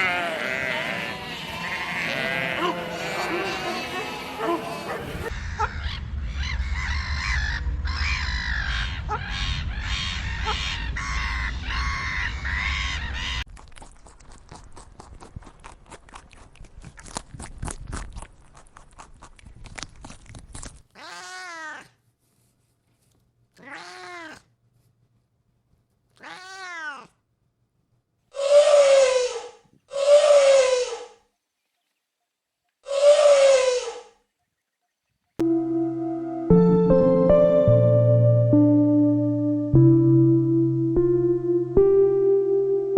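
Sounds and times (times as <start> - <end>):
cat meowing: 21.0 - 22.0, 23.6 - 24.5, 26.2 - 27.2.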